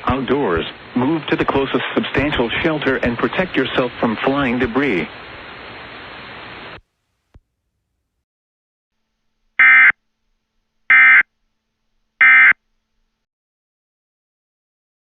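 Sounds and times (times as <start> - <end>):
steady hiss: 0.0 - 8.2.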